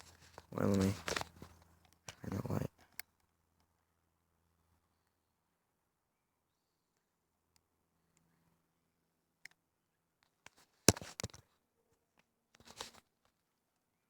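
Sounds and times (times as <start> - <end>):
twigs crunching underfoot: 0.0 - 1.6.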